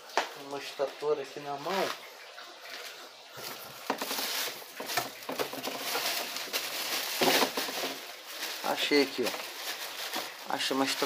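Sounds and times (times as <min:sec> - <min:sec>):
rustling through a bag of parts: 0:03.4 - 0:11.0.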